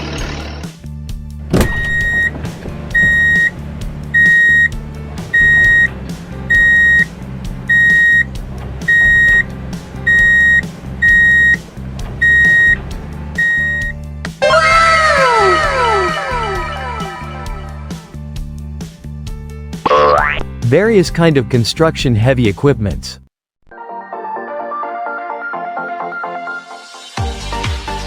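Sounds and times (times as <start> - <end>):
low engine rumble: 0.0 - 18.2
reversing alarm beeping: 1.8 - 2.4, 3.0 - 3.5, 4.1 - 5.9, 6.5 - 7.1, 7.7 - 8.3, 8.9 - 9.5, 10.1 - 11.6, 12.2 - 12.8, 13.4 - 17.6
many falling tones: 14.4 - 17.9.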